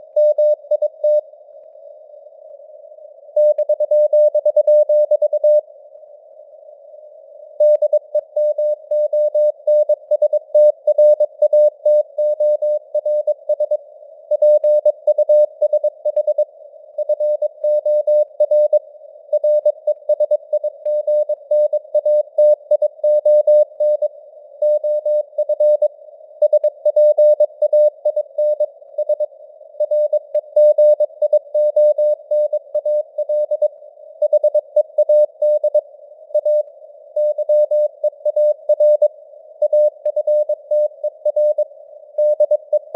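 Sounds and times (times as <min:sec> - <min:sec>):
morse code beeps: 0:19.4 - 0:35.8, 0:37.2 - 0:42.9.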